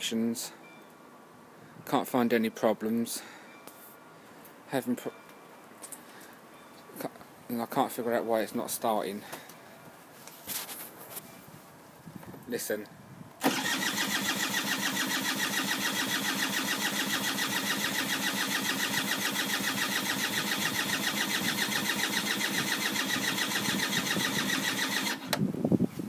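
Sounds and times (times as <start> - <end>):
motorcycle starter cranking: 13.4 - 25.4.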